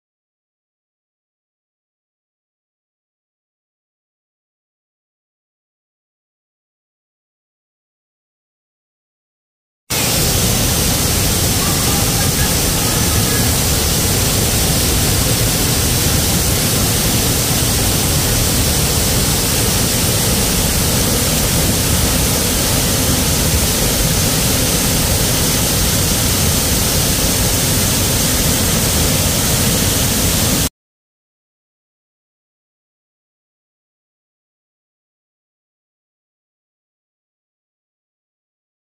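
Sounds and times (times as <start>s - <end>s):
waterfall pouring: 9.9s - 30.7s.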